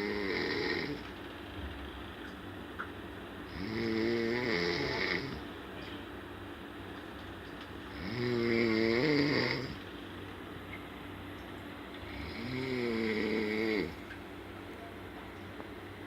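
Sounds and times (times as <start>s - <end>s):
person snoring loudly: 0.0s - 1.0s, 3.5s - 5.4s, 7.9s - 9.8s, 12.1s - 14.0s.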